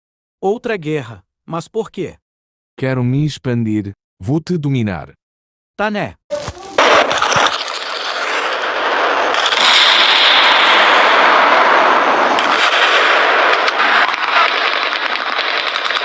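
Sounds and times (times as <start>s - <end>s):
explosions: 6.5s - 16.0s
gunfire: 6.7s - 16.0s.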